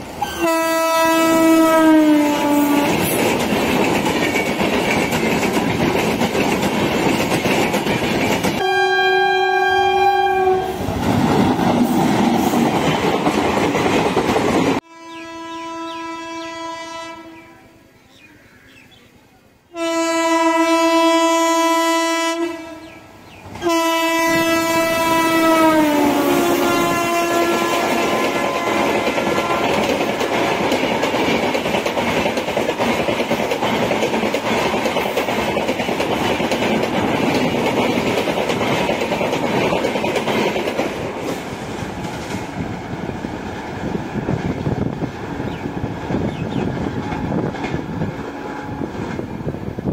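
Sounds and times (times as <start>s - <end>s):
passing train rumble and rail clatter: 0.0s - 14.9s, 19.7s - 49.9s
electric locomotive horn: 0.2s - 3.0s, 8.6s - 10.8s, 14.8s - 17.8s, 19.7s - 23.0s, 23.6s - 30.5s, 48.3s - 49.1s.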